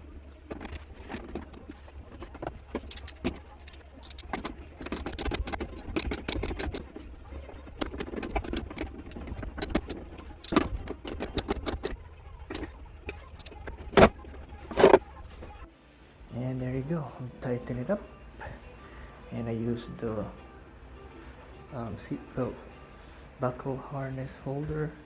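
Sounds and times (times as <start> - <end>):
metal parts clicking and rattling: 0.0 - 15.6.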